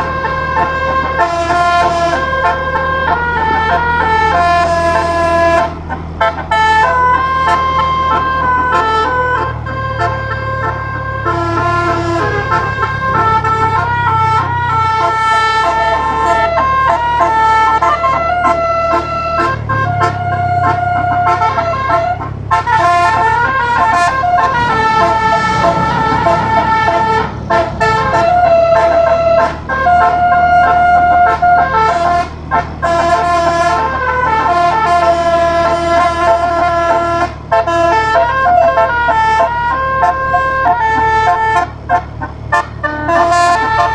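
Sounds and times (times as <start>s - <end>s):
low rumble: 0.0s - 31.5s
bus air horns playing melody: 0.0s - 43.9s.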